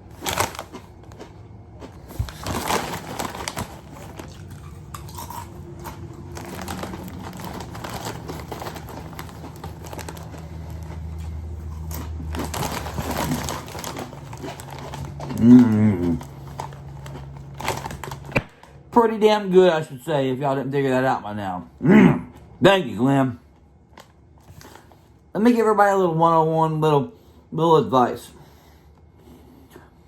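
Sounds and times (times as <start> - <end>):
chewing crunchy chips: 0.0 - 18.8, 23.9 - 25.2
chip bag crinkling: 0.0 - 18.8, 23.9 - 25.2
person humming: 15.3 - 16.4.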